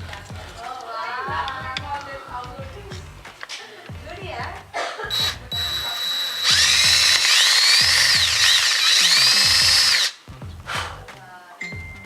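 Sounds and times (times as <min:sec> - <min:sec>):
power drill screeching through metal: 0:05.1 - 0:10.2.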